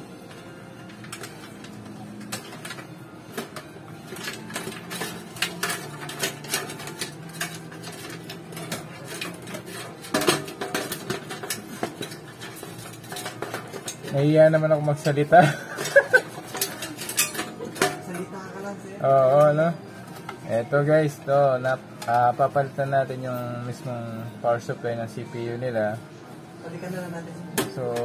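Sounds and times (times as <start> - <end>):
metal parts clinking and knocking: 0.8 - 18.3
metal clatter: 4.1 - 14.3, 15.0 - 18.2.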